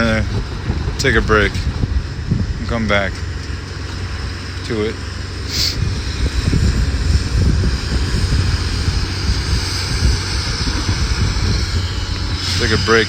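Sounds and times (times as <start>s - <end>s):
demolition machinery rumbling: 0.0s - 13.0s
short hiss: 5.5s - 5.8s.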